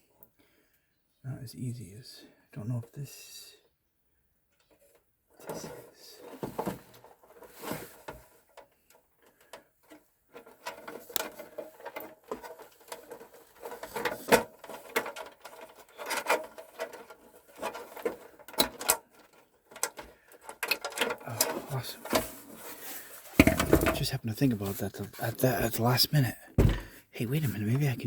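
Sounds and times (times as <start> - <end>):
computer parts clicking and rattling: 10.4 - 22.3.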